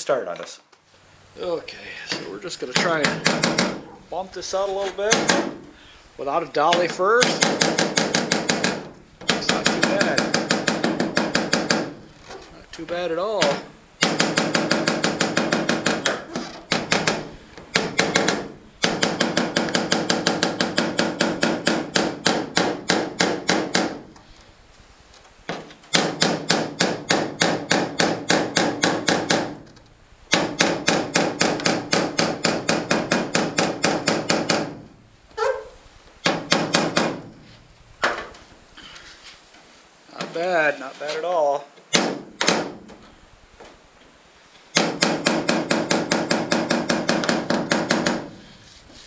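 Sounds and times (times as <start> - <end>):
hammer tapping on aluminum hull: 2.1 - 3.8, 5.0 - 5.6, 6.6 - 12.0, 12.8 - 24.1, 25.9 - 29.7, 30.3 - 34.9, 44.7 - 48.3.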